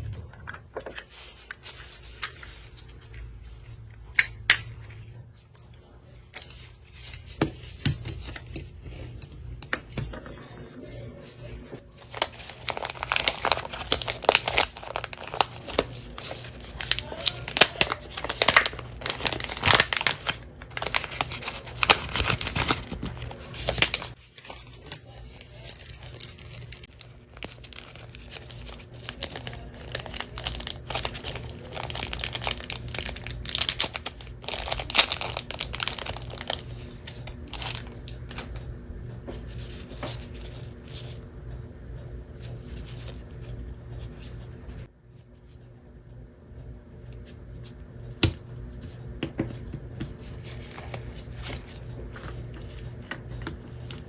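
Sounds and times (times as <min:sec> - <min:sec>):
plastic parts crinkling and clicking: 0:11.9 - 0:24.2, 0:26.0 - 0:38.7.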